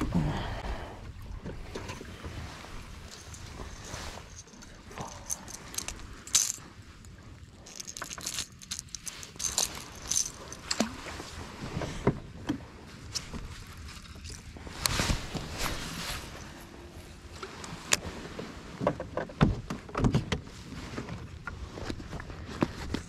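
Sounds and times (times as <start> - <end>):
fishing gear clicking and rattling: 3.0 - 11.2.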